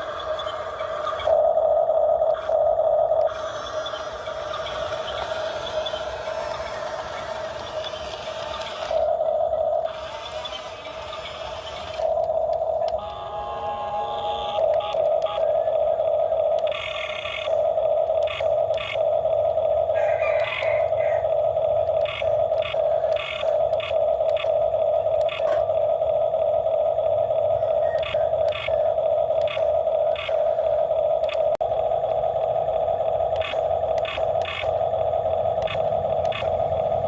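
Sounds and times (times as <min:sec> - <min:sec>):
high whine: 0:00.0 - 0:37.0
low engine rumble: 0:00.0 - 0:37.0.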